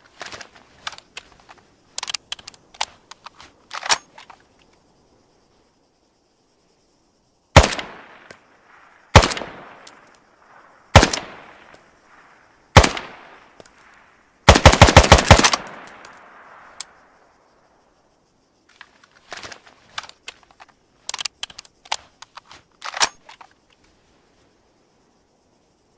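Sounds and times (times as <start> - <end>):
rifle clicks and clacks: 0.1 - 4.4, 14.5 - 16.2, 18.7 - 23.5
rifle shots: 7.6 - 9.9, 10.9 - 11.7, 12.8 - 13.5, 14.5 - 16.1.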